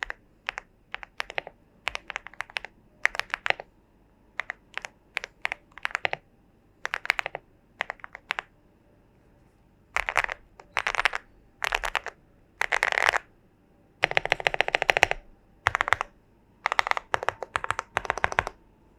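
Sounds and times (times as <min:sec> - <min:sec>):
mechanical keyboard typing: 0:00.0 - 0:03.7, 0:04.4 - 0:06.2, 0:06.8 - 0:08.5, 0:10.0 - 0:13.3, 0:14.0 - 0:18.6.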